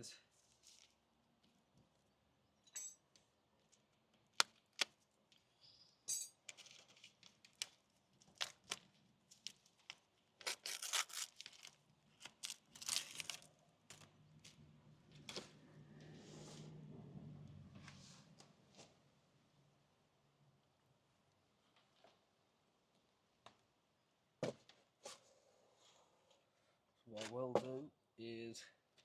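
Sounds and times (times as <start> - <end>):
packaging rustling and tearing: 6.5 - 14.6.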